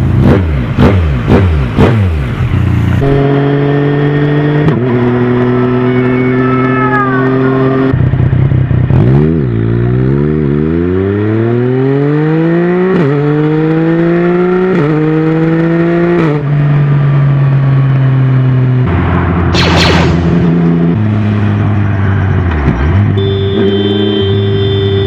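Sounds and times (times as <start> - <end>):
motorcycle engine accelerating: 0.0 - 25.0.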